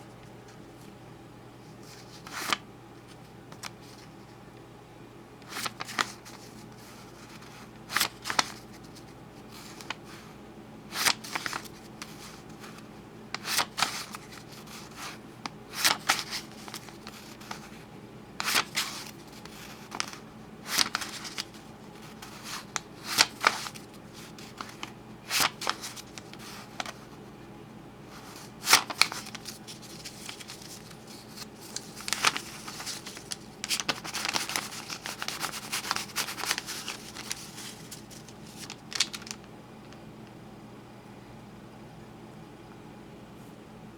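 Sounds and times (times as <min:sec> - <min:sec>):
paper bills snapping and crackling: 0:05.4 - 0:10.2, 0:10.9 - 0:17.8, 0:18.4 - 0:27.1, 0:28.1 - 0:40.0.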